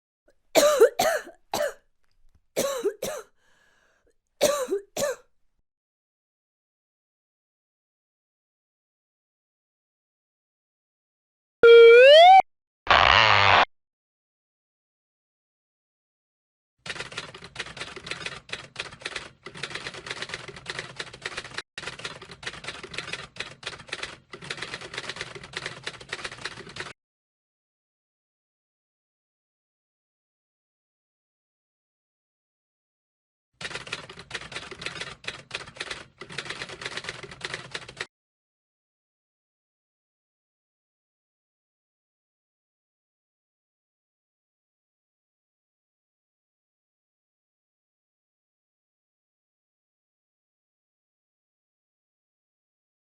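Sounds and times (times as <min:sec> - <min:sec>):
person coughing harshly: 0:00.6 - 0:01.8, 0:02.6 - 0:03.3, 0:04.4 - 0:05.3
typing keys clattering: 0:16.9 - 0:26.9, 0:33.6 - 0:38.1.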